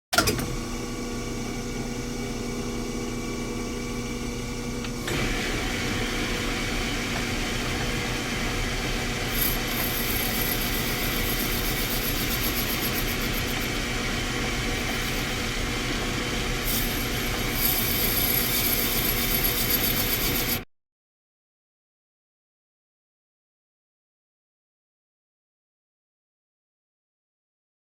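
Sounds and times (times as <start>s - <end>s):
machine running hum: 0.2s - 20.6s.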